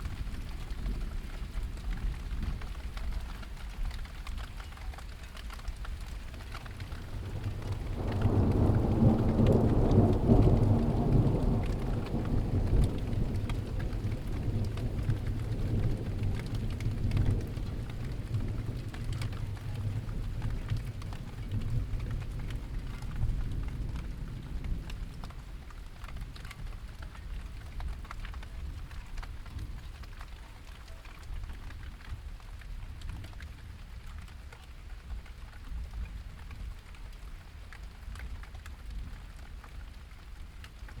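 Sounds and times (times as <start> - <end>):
raindrop ticks: 0.0 - 41.0
steady rain falling: 0.0 - 41.0
deep roll of thunder: 7.0 - 25.4.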